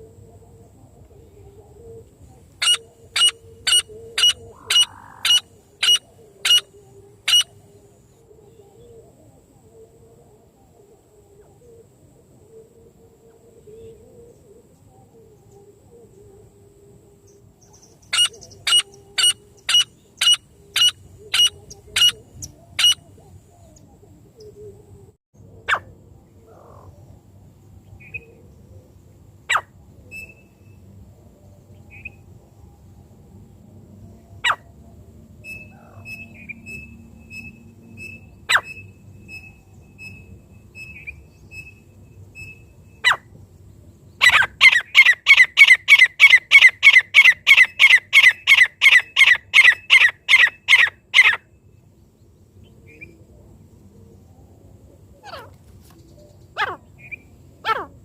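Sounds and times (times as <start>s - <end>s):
faint bird chirps: 0.0s - 9.4s, 17.2s - 33.0s, 34.2s - 57.9s
francolin calls: 1.3s - 9.0s, 17.3s - 24.8s, 29.5s - 30.8s, 35.4s - 43.4s, 44.2s - 51.6s, 55.1s - 58.0s.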